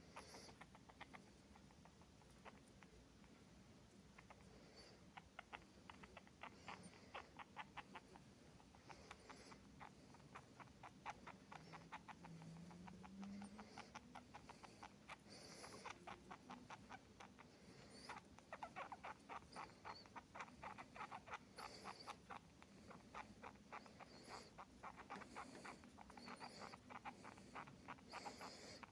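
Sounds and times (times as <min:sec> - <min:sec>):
mouse squeaking: 0:00.1 - 0:03.4, 0:04.0 - 0:28.9.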